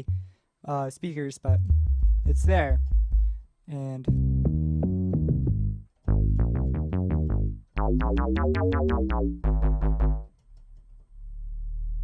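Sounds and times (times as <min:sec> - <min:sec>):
low synth bass tones: 0:00.0 - 0:00.4, 0:01.5 - 0:03.5, 0:04.1 - 0:10.3.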